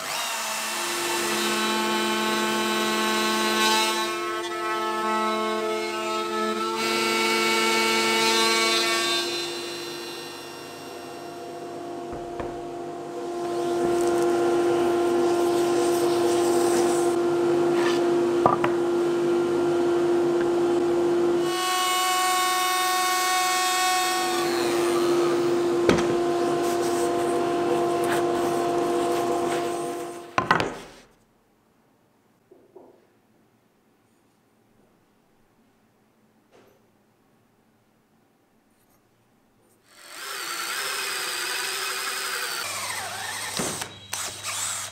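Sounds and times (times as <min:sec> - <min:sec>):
power tool cutting wood: 0:00.0 - 0:19.0, 0:19.6 - 0:30.3, 0:39.9 - 0:44.9.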